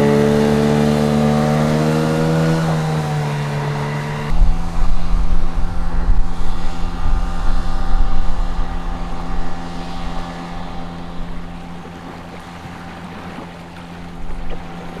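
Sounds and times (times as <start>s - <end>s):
outboard motor running: 0.0s - 15.0s
wind buffeting microphone: 0.0s - 15.0s.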